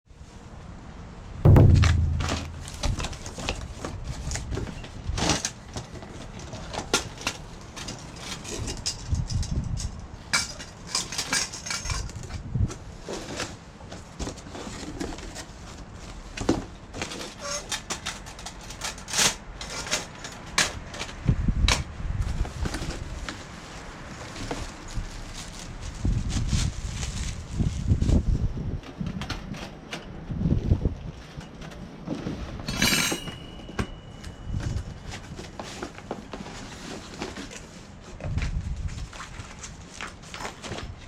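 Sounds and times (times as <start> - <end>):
heavy thump: 1.5 - 3.2
metal parts clinking and clattering: 7.8 - 12.2, 32.7 - 34.0.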